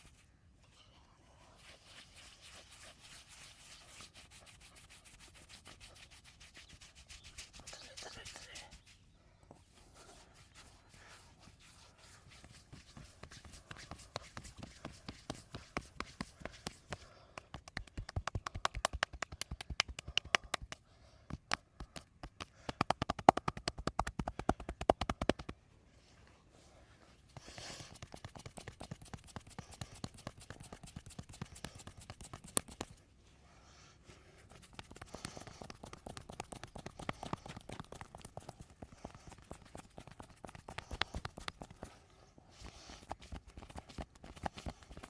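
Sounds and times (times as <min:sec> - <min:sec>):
soft rubbing: 0:00.0 - 0:18.3, 0:21.9 - 0:45.0
hands slapping on body: 0:12.3 - 0:25.6, 0:27.4 - 0:33.0, 0:34.5 - 0:42.0, 0:42.6 - 0:45.0.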